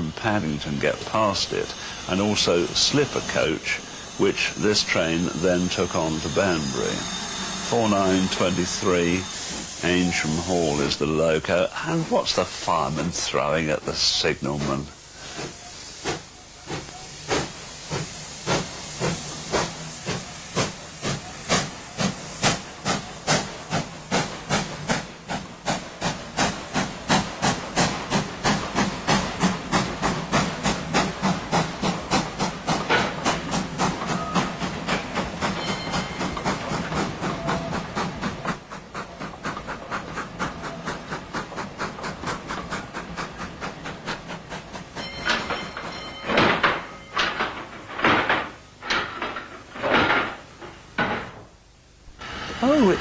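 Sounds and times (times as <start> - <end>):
steam locomotive chuffing: 0.0 - 50.8, 52.1 - 53.0.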